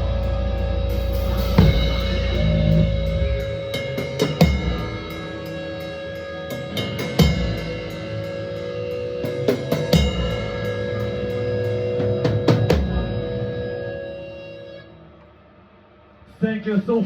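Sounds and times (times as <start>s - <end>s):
cymbal crashes: 0.0s - 13.6s
live metal band: 0.0s - 14.8s
drum hits: 1.1s - 5.0s.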